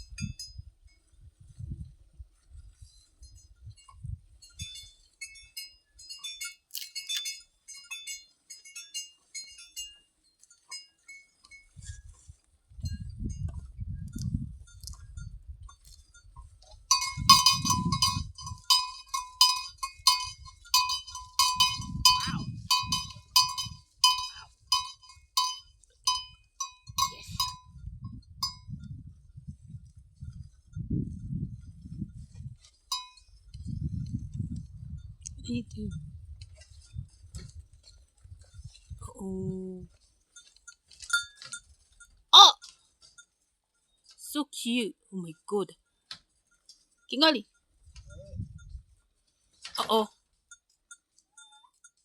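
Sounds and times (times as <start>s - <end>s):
cowbells clanking: 3.3s - 11.8s, 14.6s - 28.8s, 32.2s - 33.5s, 39.9s - 43.4s, 50.3s - 52.0s.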